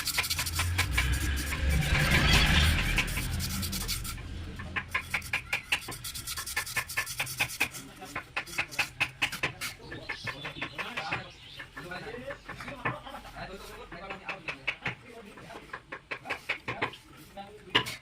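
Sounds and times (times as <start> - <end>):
sanding on brake part: 0.0 - 10.2.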